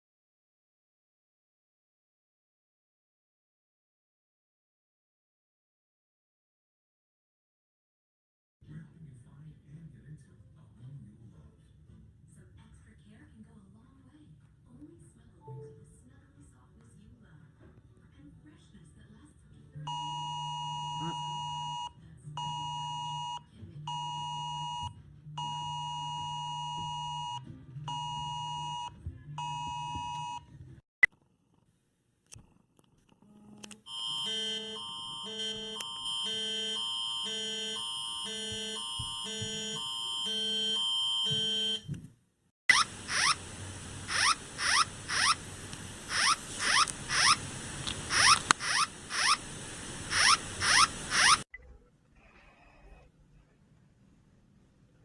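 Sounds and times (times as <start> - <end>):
emergency alert alarm beeping: 19.9 - 30.4, 33.9 - 41.9
steady hiss: 42.8 - 51.4.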